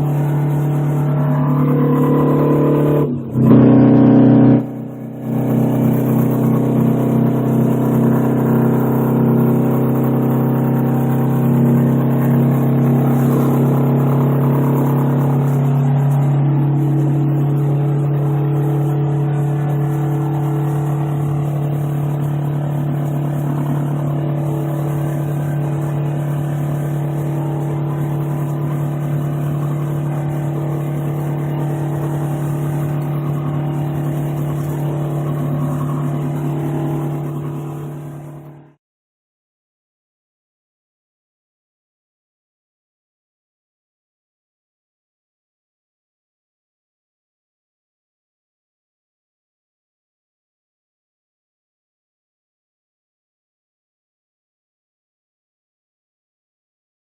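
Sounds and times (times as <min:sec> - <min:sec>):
diesel truck engine droning: 0:00.0 - 0:38.8.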